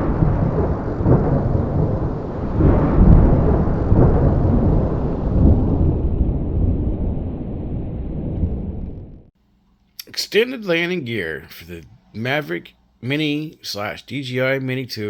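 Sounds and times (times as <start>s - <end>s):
loud low rumbling: 0.0s - 9.3s.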